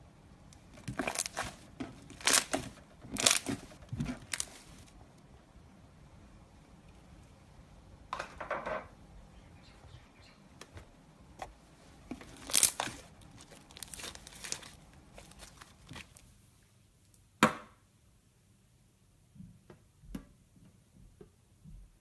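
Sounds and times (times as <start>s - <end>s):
slime squeezed wet crackles: 0.9s - 3.6s, 12.2s - 16.2s.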